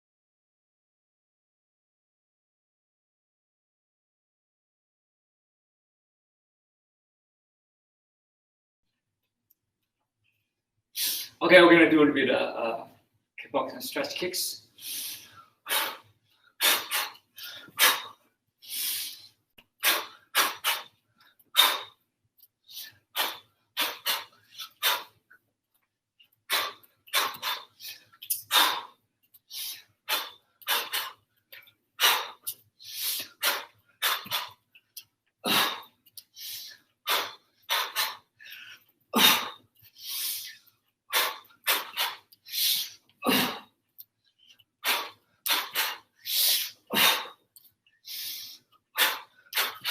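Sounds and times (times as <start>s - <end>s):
sharp hissing exhalations: 11.0s - 11.4s, 14.8s - 20.9s, 21.6s - 22.0s, 22.6s - 25.2s, 26.5s - 31.2s, 32.0s - 34.6s, 35.4s - 43.6s, 44.8s - 47.4s, 48.0s - 49.9s.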